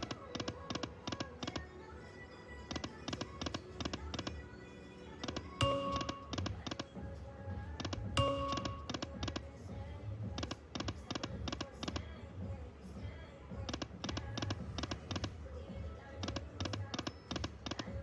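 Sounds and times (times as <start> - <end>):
low electronic beat: 5.5 - 16.5
short chime: 5.6 - 6.6, 8.2 - 9.2.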